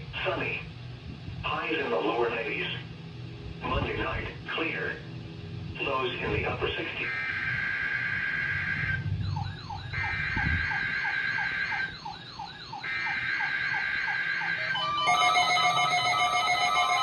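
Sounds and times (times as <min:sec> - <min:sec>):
falling siren-like tone: 0:07.0 - 0:17.0
high warbling tone: 0:14.4 - 0:17.0
weather alert radio beeping: 0:14.4 - 0:17.0.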